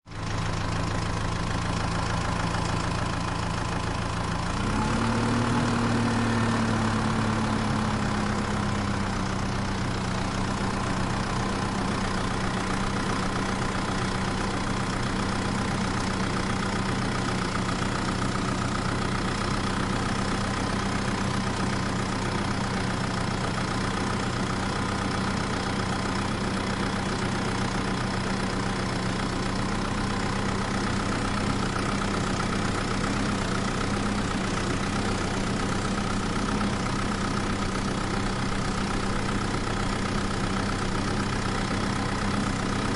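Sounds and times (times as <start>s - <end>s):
tractor engine idling: 0.0s - 42.9s.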